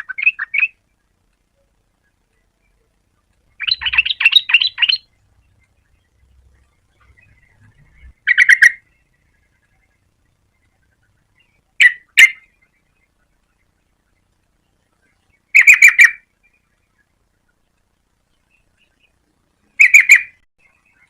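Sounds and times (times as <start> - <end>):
bird calling in chattering bursts: 0.0 - 0.8, 3.5 - 5.5, 7.0 - 9.0, 15.4 - 16.3, 19.8 - 21.0.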